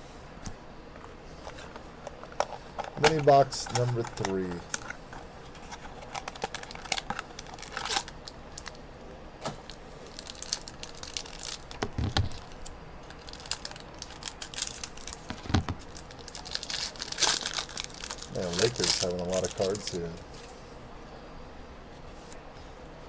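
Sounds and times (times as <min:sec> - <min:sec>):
packaging crinkling and tearing: 0:01.5 - 0:08.8, 0:09.6 - 0:20.2.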